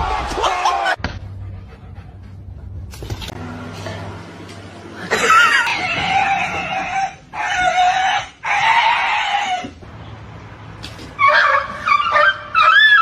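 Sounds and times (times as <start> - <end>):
animal calls rising and falling: 5.4 - 9.8, 11.2 - 13.0.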